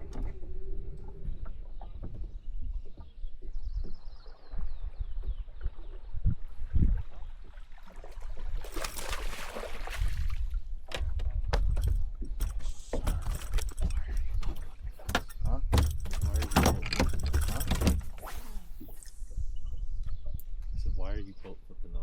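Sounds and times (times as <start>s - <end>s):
gear clatter on a boat: 10.8s - 18.2s
sharp clicks and knocks: 10.9s - 18.2s.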